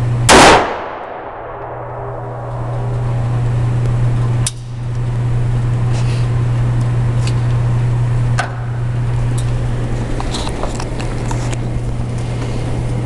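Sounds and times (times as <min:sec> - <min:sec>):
steady low hum: 0:00.0 - 0:13.0
pistol shots: 0:00.3 - 0:02.4.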